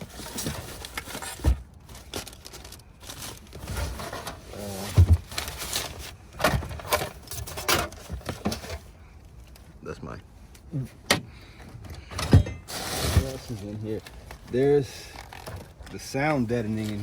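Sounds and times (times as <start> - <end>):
rustling: 0.0 - 9.6, 12.3 - 17.0
knocks and thuds in car trunk: 4.8 - 5.3.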